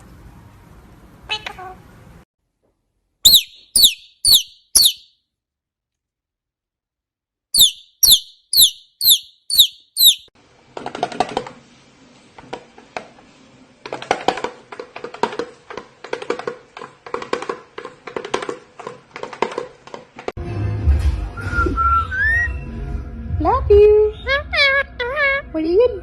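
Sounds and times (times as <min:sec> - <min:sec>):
small bird chirping: 0:03.2 - 0:05.2, 0:07.6 - 0:10.3.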